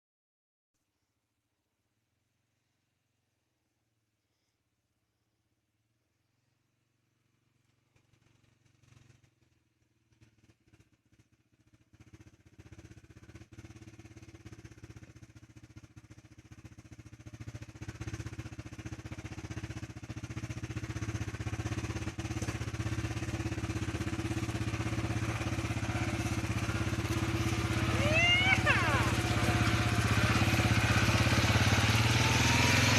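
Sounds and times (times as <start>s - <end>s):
off-road vehicle engine running: 7.0s - 32.9s.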